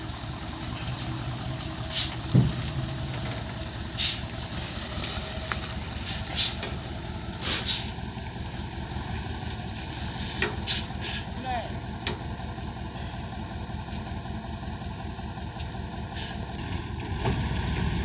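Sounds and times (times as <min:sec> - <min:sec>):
excavator diesel engine running: 0:00.0 - 0:18.0
short hisses: 0:01.9 - 0:02.2, 0:04.0 - 0:04.2, 0:06.0 - 0:06.8, 0:07.4 - 0:07.9, 0:10.2 - 0:11.3
loud clunk: 0:01.9 - 0:02.8.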